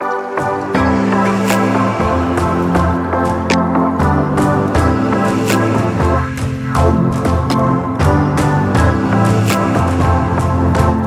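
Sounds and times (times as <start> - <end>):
synth music with steady beat: 0.0 - 11.0.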